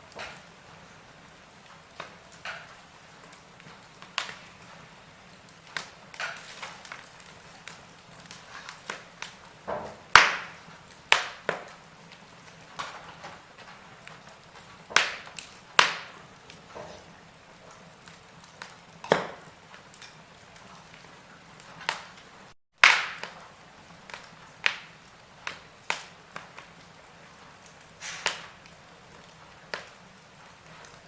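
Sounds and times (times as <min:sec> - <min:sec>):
wood fire crackling: 0:00.0 - 0:31.0
faint hiss: 0:27.9 - 0:28.6.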